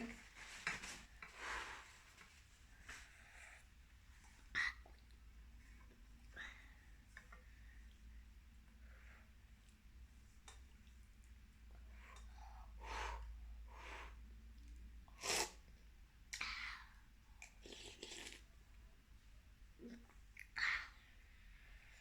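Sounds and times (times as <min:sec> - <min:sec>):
child slurping noodles: 0:15.2 - 0:15.6, 0:17.5 - 0:18.5.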